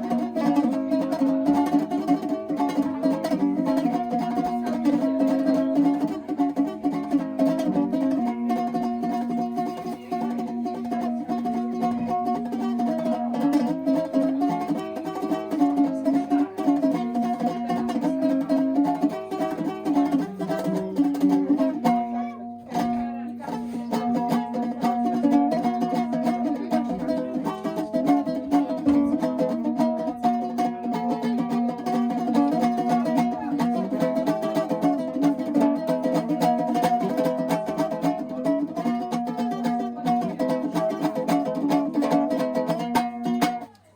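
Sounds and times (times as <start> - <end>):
plucked-string tune: 0.0 - 43.9.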